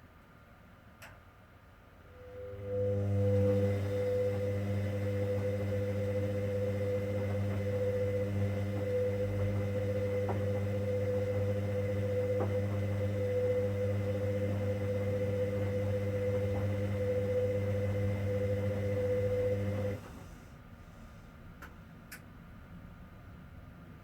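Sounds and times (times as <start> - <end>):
washing machine motor whine: 2.0 - 20.7.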